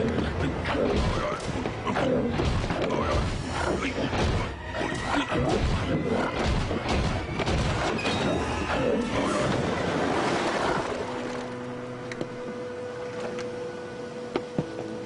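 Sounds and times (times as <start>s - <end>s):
music: 0.0s - 15.0s.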